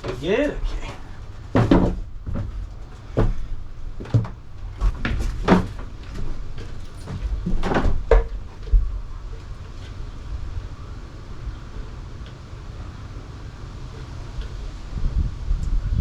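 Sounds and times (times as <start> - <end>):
low steady rumble: 0.0 - 16.0
wooden knocks and thuds: 1.4 - 9.0.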